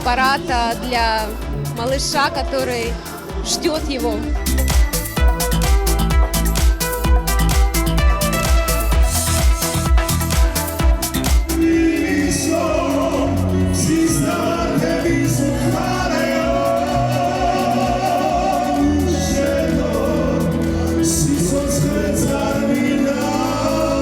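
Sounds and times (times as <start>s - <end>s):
steady bass: 0.0s - 24.0s
voices singing long notes: 0.0s - 24.0s.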